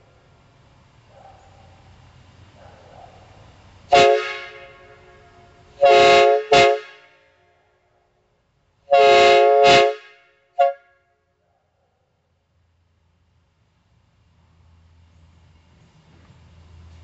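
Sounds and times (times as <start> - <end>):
train air horn blasts: 3.9 - 7.6, 8.9 - 11.2.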